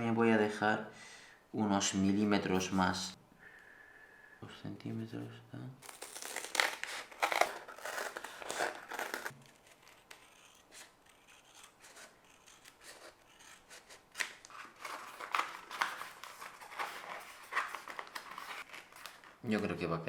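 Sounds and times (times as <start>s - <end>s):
scissors cutting foam: 6.0s - 16.4s.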